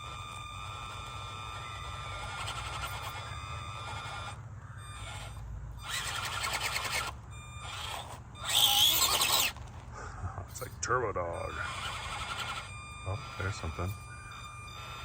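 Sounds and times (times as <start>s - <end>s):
small electric motor whining: 0.0s - 15.0s
fast ticking: 11.4s - 15.0s.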